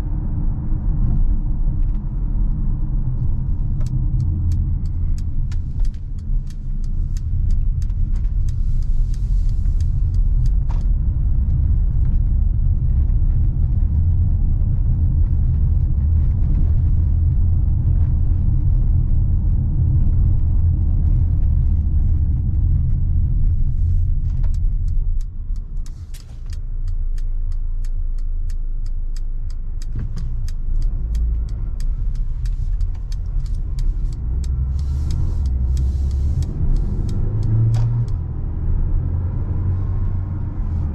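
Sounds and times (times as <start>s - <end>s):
car interior low rumble: 0.0s - 40.9s
fast even ticks: 3.5s - 10.9s, 23.9s - 38.3s.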